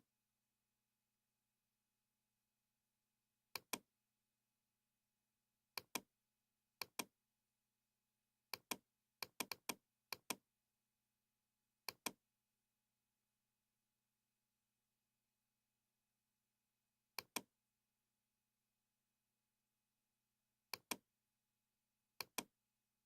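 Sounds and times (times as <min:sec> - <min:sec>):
computer mouse clicking: 0:03.5 - 0:03.8, 0:05.8 - 0:06.1, 0:06.8 - 0:07.1, 0:08.5 - 0:10.4, 0:11.9 - 0:12.2, 0:17.2 - 0:17.5, 0:20.7 - 0:21.0, 0:22.2 - 0:22.5.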